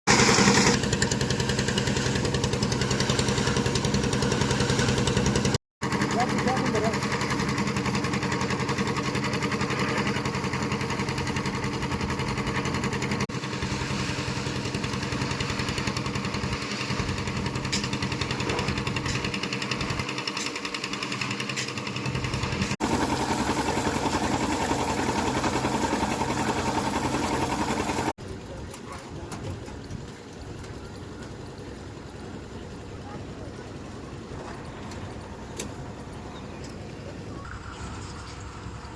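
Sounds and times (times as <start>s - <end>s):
concrete mixer engine running: 0.1s - 38.9s.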